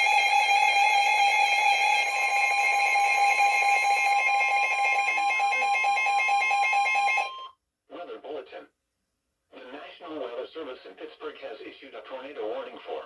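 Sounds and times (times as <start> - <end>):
harsh two-tone electronic alarm: 0.0 - 7.6.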